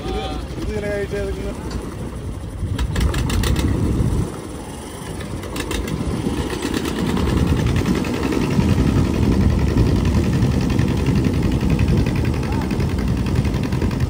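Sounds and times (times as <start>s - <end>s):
engine running: 0.0s - 14.0s.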